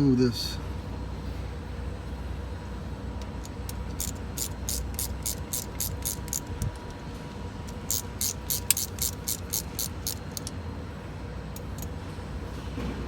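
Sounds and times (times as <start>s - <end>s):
low steady hum: 0.0s - 13.0s
hand ratchet clicking: 3.2s - 10.6s, 11.6s - 11.9s.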